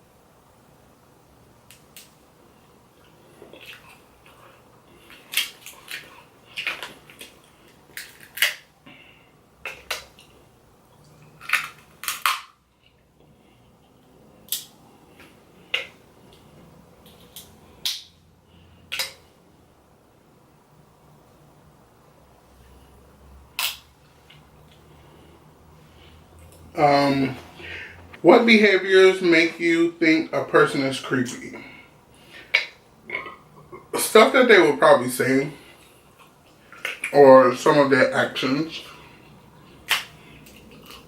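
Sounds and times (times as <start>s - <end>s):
shells cracking and clicking: 5.1s - 8.7s, 11.4s - 12.6s.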